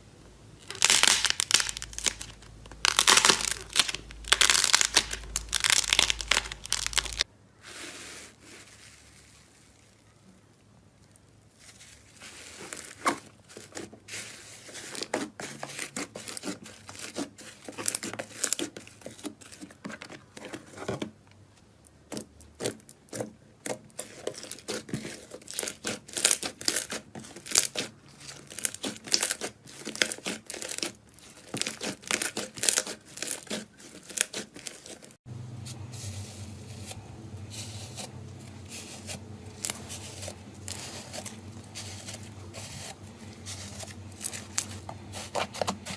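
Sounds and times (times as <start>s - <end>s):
low steady hum: 0.0s - 7.6s, 35.3s - 45.9s
slime crackling and tearing: 0.6s - 7.3s, 14.8s - 19.8s, 22.1s - 35.2s, 37.8s - 45.9s.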